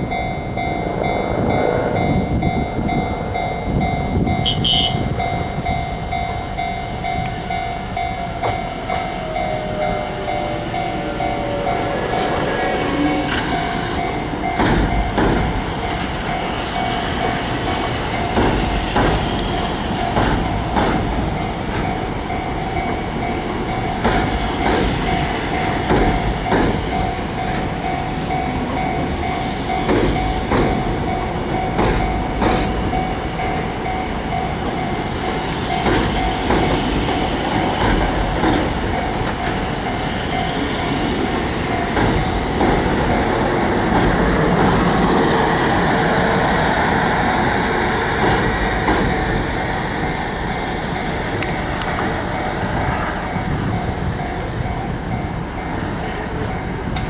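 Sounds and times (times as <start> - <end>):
steady electronic tone: 0.0 - 8.2
train rumble: 0.0 - 57.0
wheels clacking over rail joints: 14.4 - 28.8, 35.8 - 46.0.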